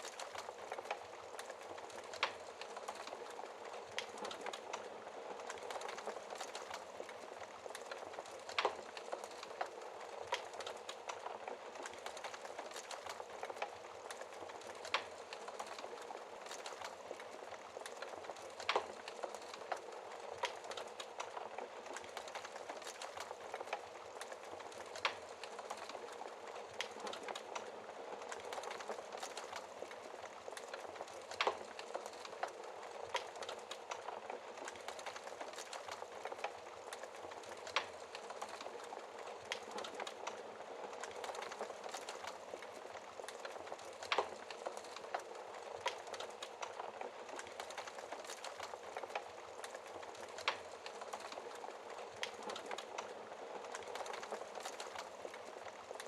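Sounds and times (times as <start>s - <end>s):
fire hissing and crackling: 0.0s - 56.0s.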